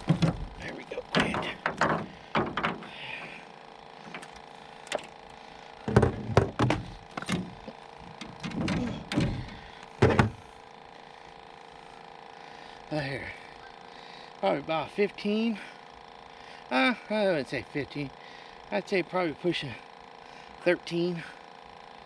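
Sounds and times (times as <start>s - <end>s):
fish knocking and thumping: 0.0s - 3.0s, 4.1s - 5.1s, 5.9s - 10.4s
faint steady hum: 0.0s - 22.0s.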